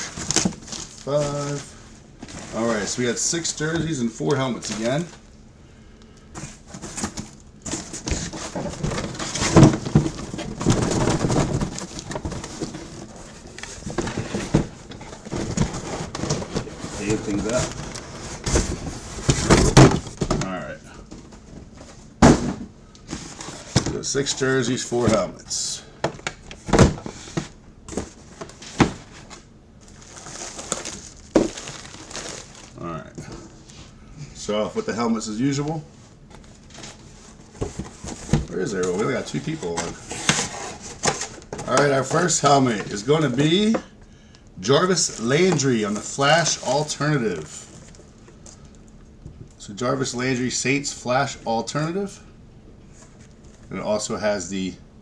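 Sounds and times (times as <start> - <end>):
knocks and thumps of boxes: 0.0 - 2.6, 6.4 - 24.2, 26.0 - 29.4, 30.0 - 33.6, 36.3 - 43.0
plastic packaging crinkling: 0.0 - 5.3, 6.6 - 21.6, 26.2 - 33.6
boxes knocking: 6.8 - 20.5, 22.2 - 24.1.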